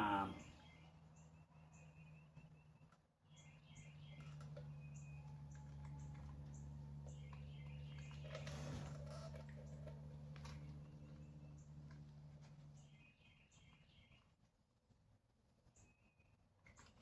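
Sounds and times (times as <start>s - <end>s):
small birds chirping: 0.0s - 14.3s.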